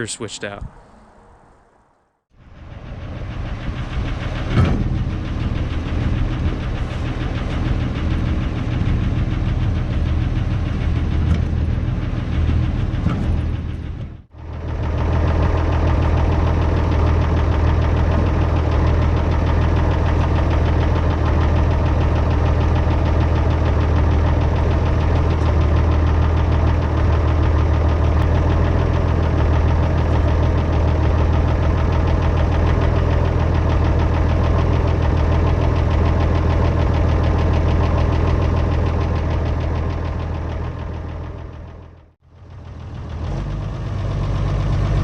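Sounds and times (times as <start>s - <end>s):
engine idling: 2.3s - 45.0s.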